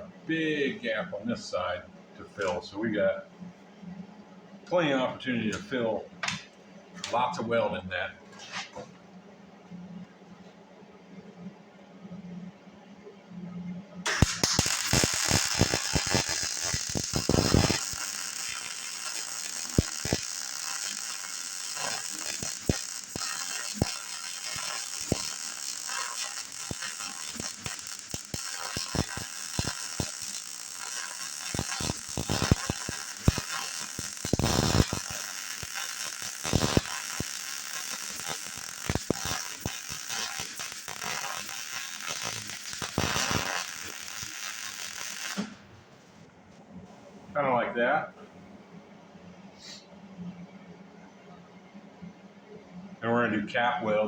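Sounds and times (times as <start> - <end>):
welder arc crackling: 14.1 - 46.2.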